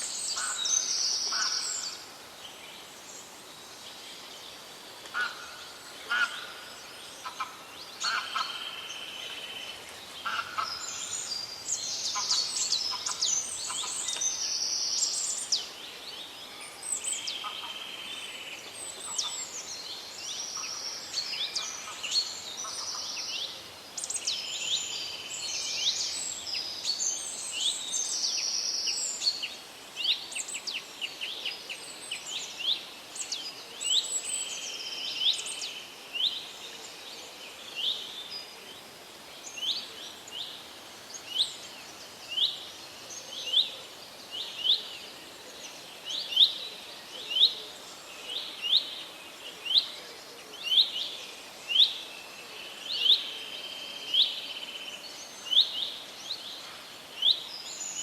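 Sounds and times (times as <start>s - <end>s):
birds chirping and trilling: 0.0s - 2.1s, 5.2s - 15.8s
soft background hiss: 0.0s - 58.0s.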